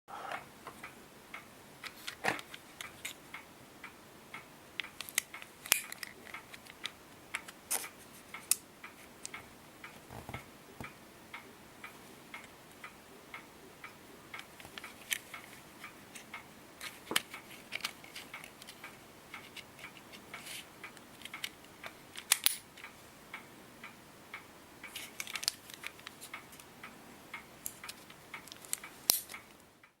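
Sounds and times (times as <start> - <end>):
plastic clicks and snaps: 4.8 - 8.6, 16.2 - 22.9, 24.8 - 26.7, 27.3 - 29.7.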